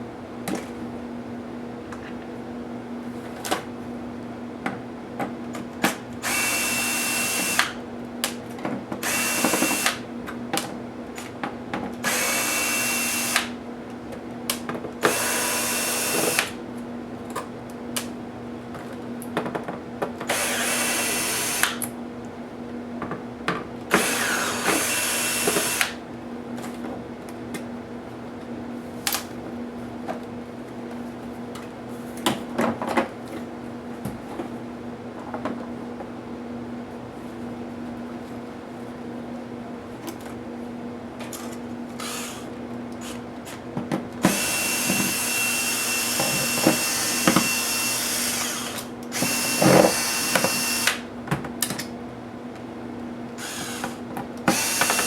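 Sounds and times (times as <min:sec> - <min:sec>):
electric screwdriver whirring: 0:06.2 - 0:07.8, 0:09.0 - 0:10.0, 0:12.0 - 0:13.5, 0:15.0 - 0:16.6, 0:20.3 - 0:21.8, 0:23.9 - 0:26.0, 0:42.0 - 0:43.2, 0:44.2 - 0:51.0, 0:53.4 - 0:55.0.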